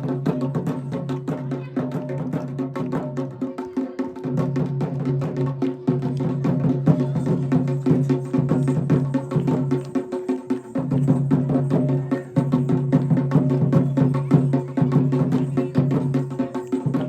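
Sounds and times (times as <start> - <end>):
fast drum strokes: 4.0 - 17.0.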